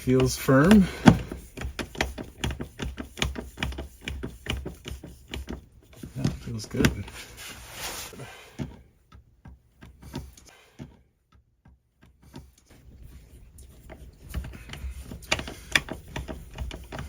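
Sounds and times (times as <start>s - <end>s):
screws and hand tools clicking: 13.7s - 17.0s.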